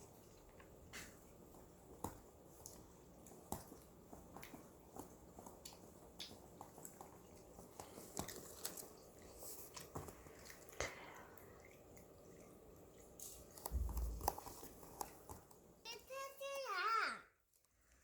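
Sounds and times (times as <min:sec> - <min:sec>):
toddler chewing: 0:02.6 - 0:15.5.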